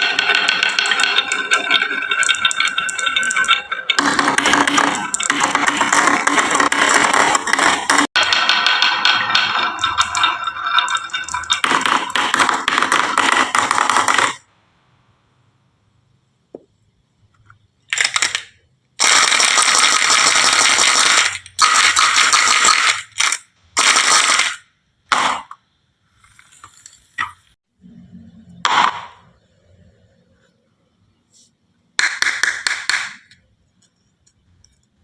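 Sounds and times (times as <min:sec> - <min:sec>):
marbles clattering down track: 0:00.0 - 0:14.5, 0:17.9 - 0:24.6.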